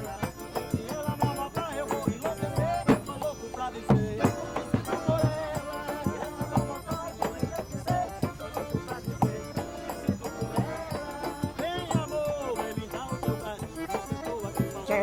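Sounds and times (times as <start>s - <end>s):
steady percussion beat: 0.0s - 15.0s.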